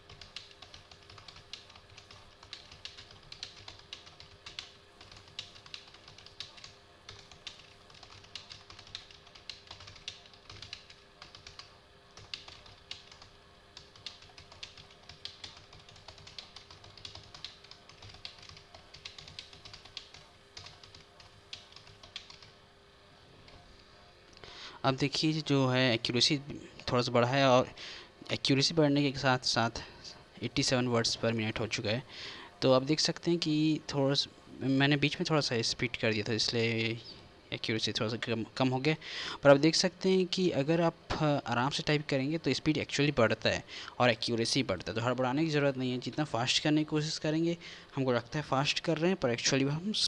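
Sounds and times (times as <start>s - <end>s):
fast keyboard typing: 0.0s - 22.6s.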